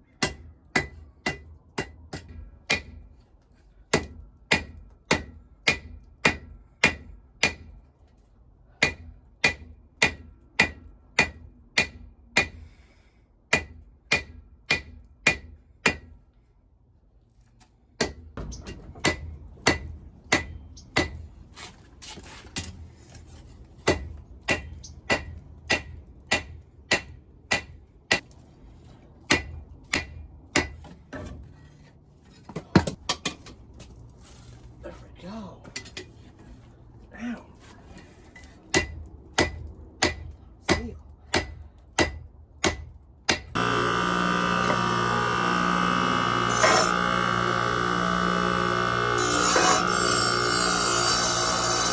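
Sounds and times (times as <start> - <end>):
hammer striking steel on anvil: 0.2 - 3.1, 3.9 - 7.8, 8.8 - 12.6, 13.5 - 16.2, 18.0 - 21.2, 23.8 - 28.2, 29.3 - 30.8, 38.7 - 51.9.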